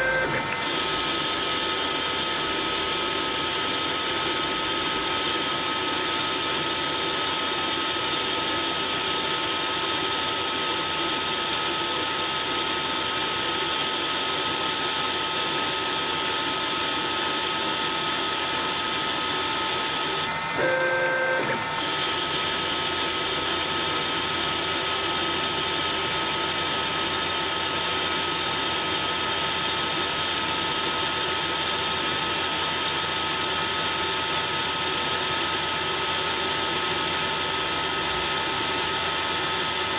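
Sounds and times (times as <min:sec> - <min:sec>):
motor whine: 0:00.0 - 0:03.9, 0:16.4 - 0:39.9.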